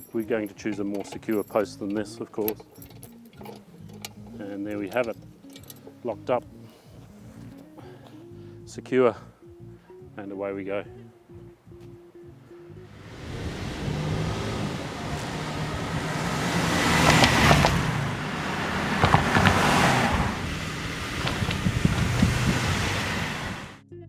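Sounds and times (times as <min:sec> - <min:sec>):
tyres ticking over road tubes: 0:00.0 - 0:07.8, 0:13.0 - 0:23.8
cars driving past: 0:12.9 - 0:23.8.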